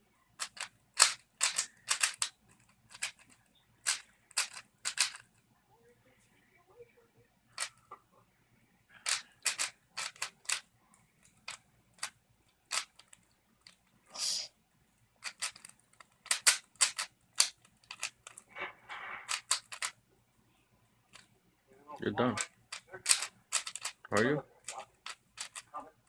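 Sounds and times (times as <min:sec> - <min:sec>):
plastic puzzle cube clicking: 0:00.4 - 0:05.3, 0:07.6 - 0:07.8, 0:09.0 - 0:13.8, 0:15.2 - 0:18.5, 0:19.3 - 0:20.0, 0:22.3 - 0:26.0
brief rustle: 0:15.2 - 0:19.9.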